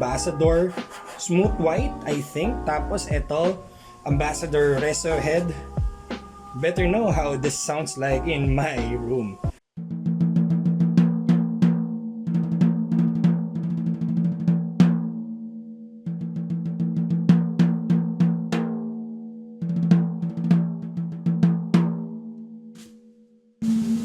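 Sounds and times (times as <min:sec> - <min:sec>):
snare drum played with sticks: 0:23.6 - 0:24.0.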